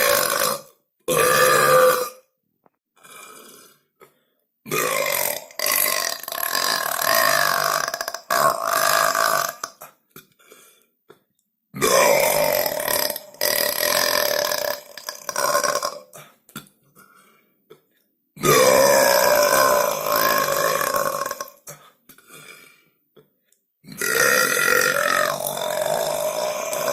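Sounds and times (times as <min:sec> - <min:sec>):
boy burping loudly: 0:00.0 - 0:02.3, 0:04.7 - 0:09.9, 0:11.8 - 0:16.7, 0:18.4 - 0:22.6, 0:23.8 - 0:26.9.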